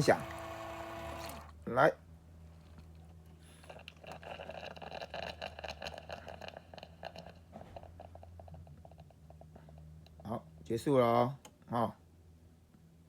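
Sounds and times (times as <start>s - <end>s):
low pump hum: 0.0s - 1.6s.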